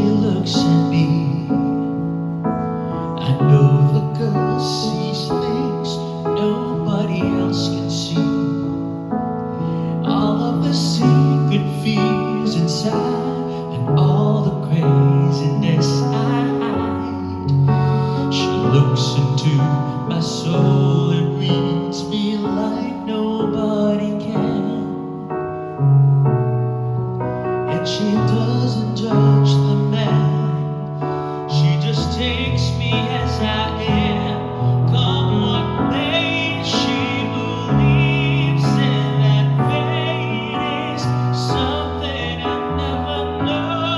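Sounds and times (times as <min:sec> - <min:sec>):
keyboard accompaniment: 0:00.0 - 0:43.9
person singing with vibrato: 0:02.6 - 0:09.0, 0:09.6 - 0:25.3, 0:27.7 - 0:43.9
held sung or played notes: 0:27.6 - 0:43.9.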